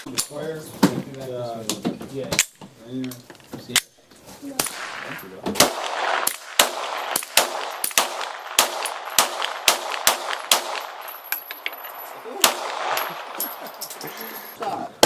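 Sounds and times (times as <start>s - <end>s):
pistol shots: 4.6s - 13.6s.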